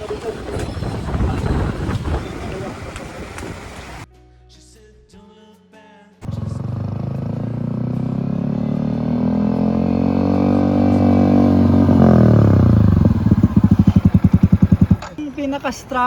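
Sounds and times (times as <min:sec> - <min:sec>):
motorcycle engine revving: 0:06.2 - 0:15.2.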